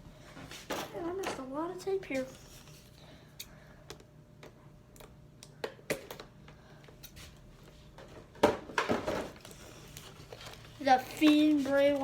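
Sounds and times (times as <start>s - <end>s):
packaging crackling and rustling: 9.3s - 12.0s.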